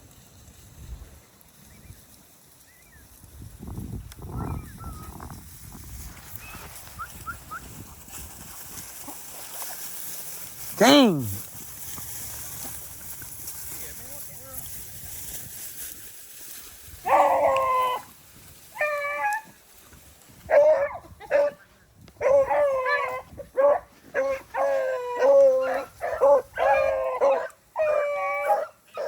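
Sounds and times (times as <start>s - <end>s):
hounds baying: 17.0s - 18.1s, 18.7s - 19.5s, 20.5s - 29.0s.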